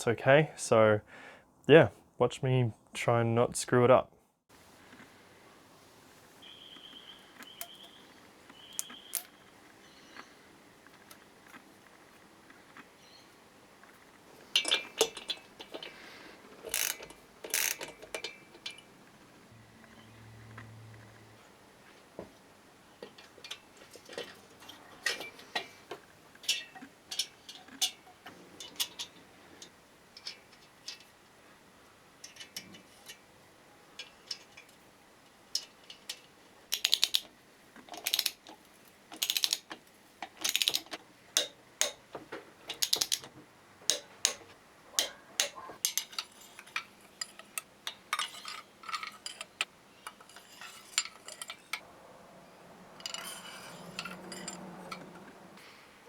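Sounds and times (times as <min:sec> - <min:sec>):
ratchet wrench clicking: 0:16.6 - 0:18.3, 0:36.7 - 0:37.2, 0:38.0 - 0:38.4, 0:39.2 - 0:39.6, 0:40.4 - 0:42.0, 0:42.8 - 0:43.2.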